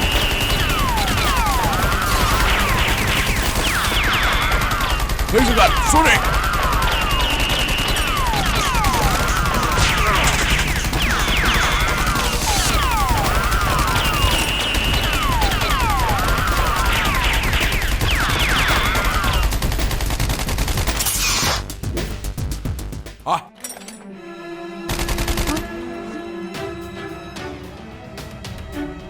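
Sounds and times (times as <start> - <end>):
whistling bullet whizzes: 0.0 - 4.6, 7.2 - 19.5
rapid gunfire: 0.0 - 22.2, 24.9 - 25.7.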